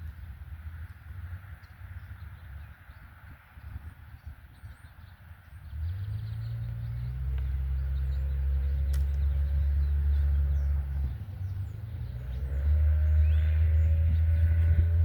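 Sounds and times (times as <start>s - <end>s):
small birds chirping: 0.0s - 15.0s
vehicle engine rumble: 0.0s - 15.0s.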